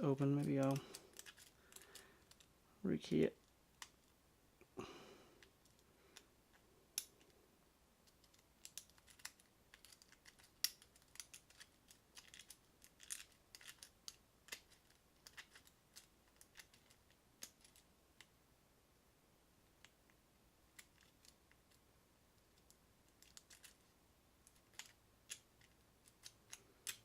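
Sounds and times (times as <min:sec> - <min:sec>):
lock pick clicking and scraping: 0:00.6 - 0:02.5, 0:08.1 - 0:17.8, 0:22.5 - 0:23.8, 0:24.4 - 0:27.0.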